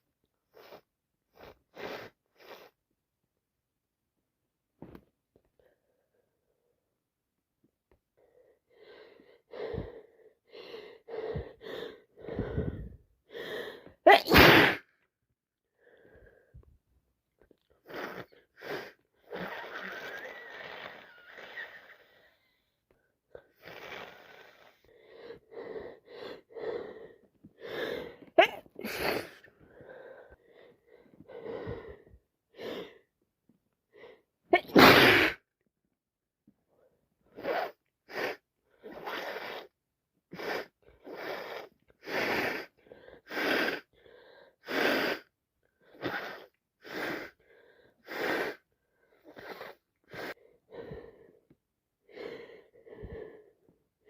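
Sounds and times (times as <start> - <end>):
gasping wheezy breaths: 8.2 - 14.0, 17.6 - 33.1, 37.3 - 51.5, 52.1 - 53.7
person sneezing: 14.1 - 14.9, 28.4 - 29.5, 34.5 - 35.4.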